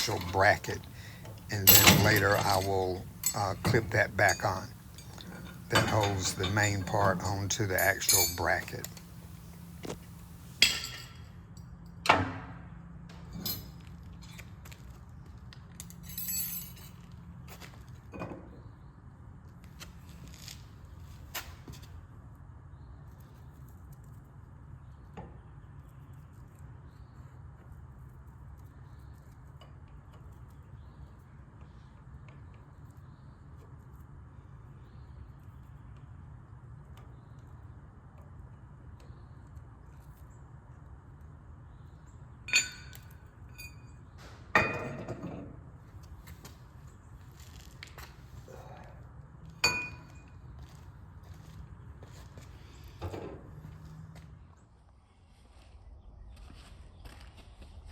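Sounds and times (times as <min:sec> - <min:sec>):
metal parts clicking: 0:00.0 - 0:11.0
metallic clanks: 0:00.0 - 0:11.2.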